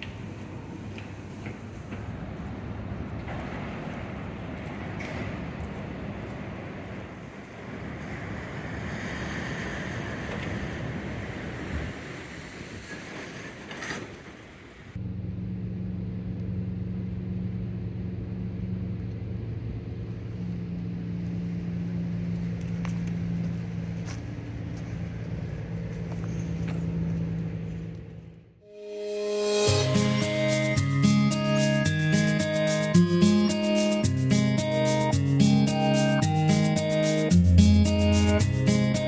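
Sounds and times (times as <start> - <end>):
low engine hum: 14.8 - 28.6, 29.4 - 39.0.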